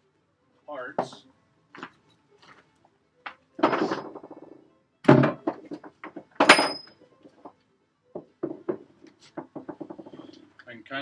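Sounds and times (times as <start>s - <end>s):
heavy iron parts clunking: 3.6s - 7.4s
ringing metal knock: 6.1s - 7.0s.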